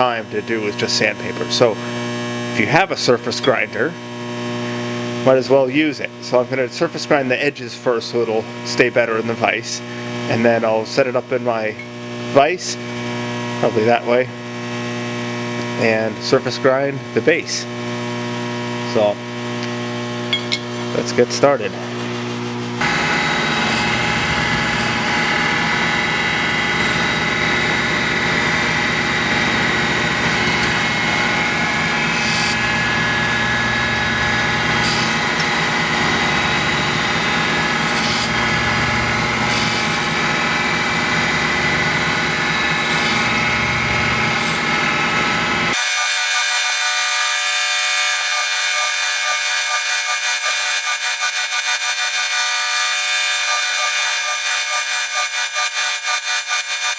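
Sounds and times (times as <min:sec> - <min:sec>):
surface grinder whine: 0:20.0 - 0:56.9
grinding wheel hiss on metal: 0:31.8 - 0:32.7, 0:34.8 - 0:38.6, 0:39.4 - 0:40.6, 0:42.4 - 0:43.4, 0:44.2 - 0:44.8, 0:45.7 - 0:56.9.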